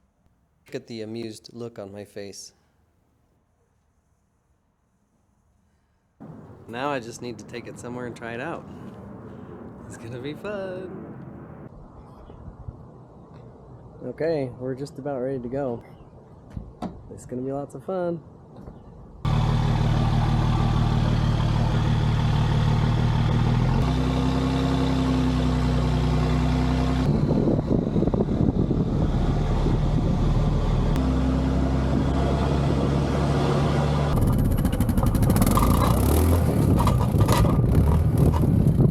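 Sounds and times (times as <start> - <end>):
atv engine running: 6.2 - 11.7, 19.3 - 38.9
wind buffeting microphone: 6.2 - 11.7, 27.0 - 31.0, 34.4 - 38.9.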